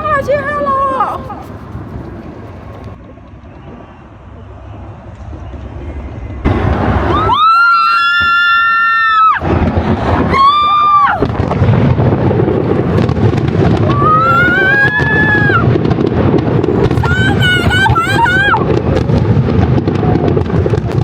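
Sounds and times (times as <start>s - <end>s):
fireworks banging: 0.0s - 21.0s
person shrieking excitedly: 7.1s - 9.4s, 10.3s - 11.2s, 13.9s - 15.6s, 17.0s - 18.6s.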